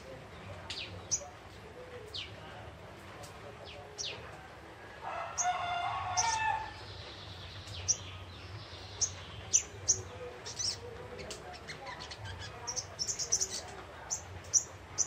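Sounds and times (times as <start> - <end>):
rooster crowing: 5.0 - 6.8.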